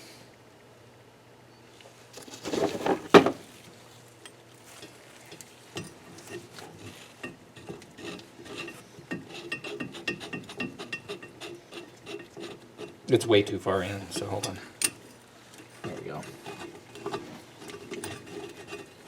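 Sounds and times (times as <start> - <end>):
tool scraping metal: 5.8 - 13.1, 15.7 - 19.0.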